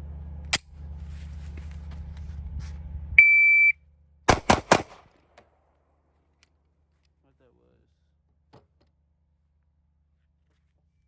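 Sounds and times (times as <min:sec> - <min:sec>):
shot timer beep: 0:03.2 - 0:03.8
pistol shots: 0:04.3 - 0:05.4.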